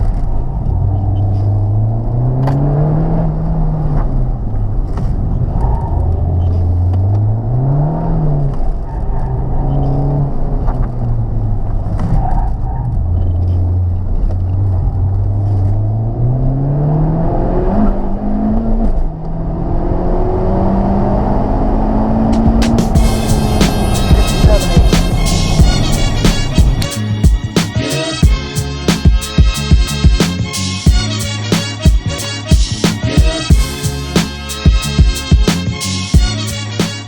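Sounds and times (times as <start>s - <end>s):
road and wind noise: 0.0s - 29.0s
car engine accelerating: 0.0s - 37.0s.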